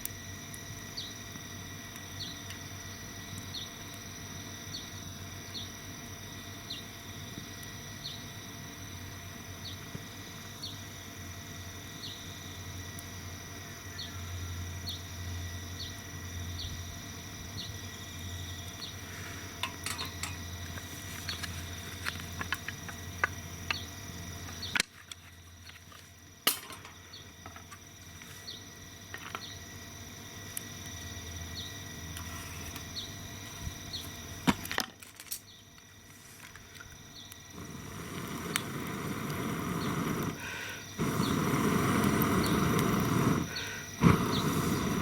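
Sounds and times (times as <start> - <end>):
campfire crackling and popping: 36.8 - 45.0.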